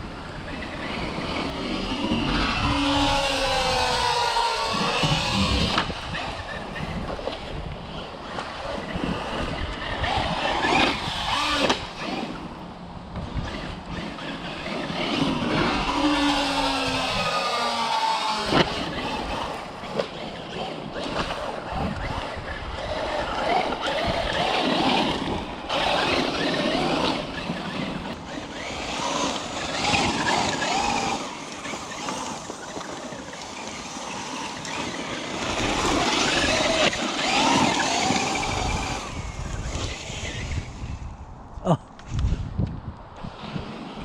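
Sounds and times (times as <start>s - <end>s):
electric motor whine: 0.0s - 41.2s.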